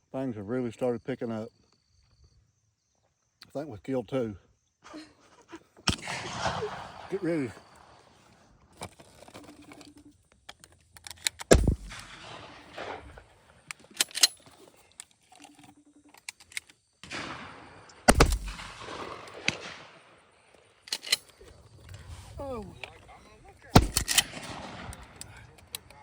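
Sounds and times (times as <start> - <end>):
shotgun shots with echo: 5.9 - 8.2, 11.5 - 13.4, 17.0 - 20.3, 23.7 - 25.6
faint sharp cracks: 15.0 - 22.0.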